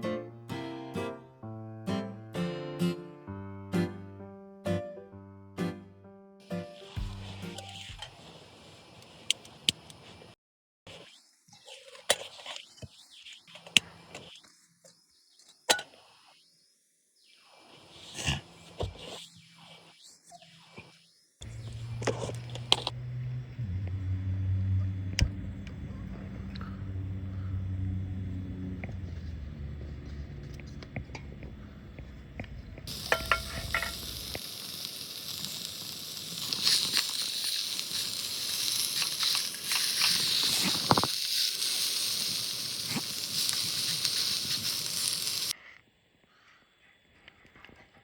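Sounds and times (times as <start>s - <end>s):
food sizzling in a pan: 6.4s - 9.8s, 32.9s - 45.6s
low hum: 21.4s - 34.4s
clinks: 32.9s - 34.4s.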